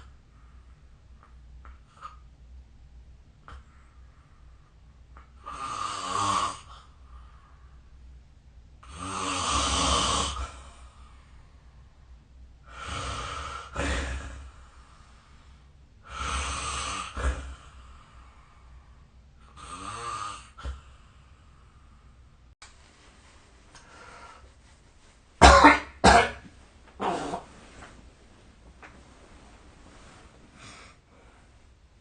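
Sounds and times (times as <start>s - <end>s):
person snoring: 5.4s - 7.0s, 8.8s - 10.8s, 12.7s - 15.0s, 16.0s - 18.3s, 19.5s - 20.8s.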